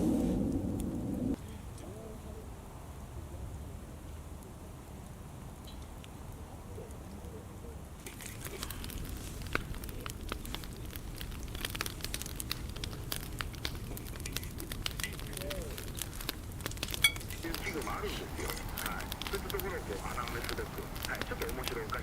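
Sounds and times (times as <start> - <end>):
wood fire crackling: 0.0 - 22.0
fire pops and snaps: 8.0 - 22.0.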